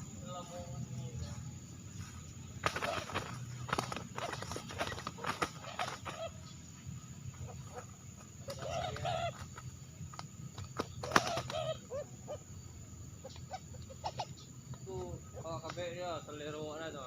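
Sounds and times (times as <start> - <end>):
dove cooing: 2.6 - 6.6, 7.3 - 9.8, 10.5 - 15.6.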